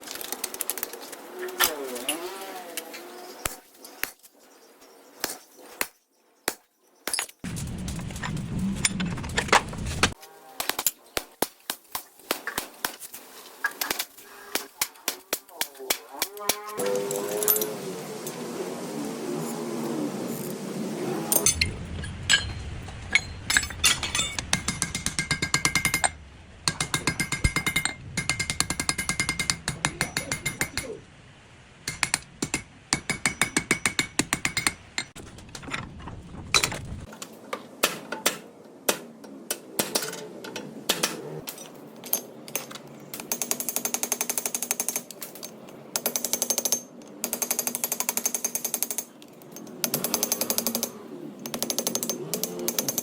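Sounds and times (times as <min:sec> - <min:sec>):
low hum: 0:07.5 - 0:10.2, 0:16.8 - 0:32.6.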